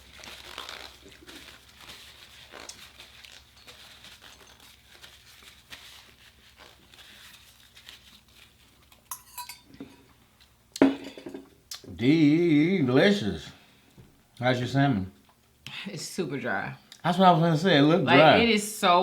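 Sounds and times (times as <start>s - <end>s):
cutlery clinking on dishes: 9.0s - 10.0s
dishes clattering: 9.1s - 10.0s, 10.8s - 11.5s.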